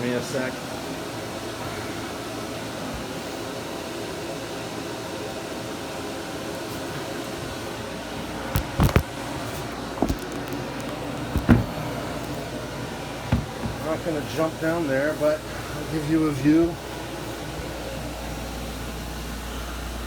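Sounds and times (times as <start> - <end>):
steady mechanical hum: 0.0 - 20.0
hatch clunks and knocks: 11.2 - 11.8, 13.3 - 13.9.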